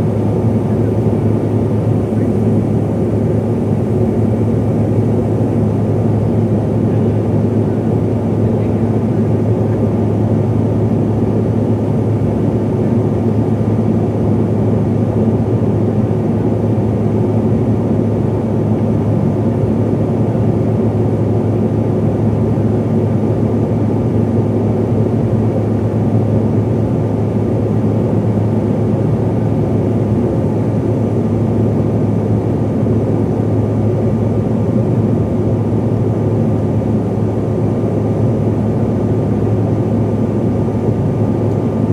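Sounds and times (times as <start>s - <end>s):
faint steady whine: 0.0s - 14.0s
airliner cabin drone: 0.0s - 41.9s.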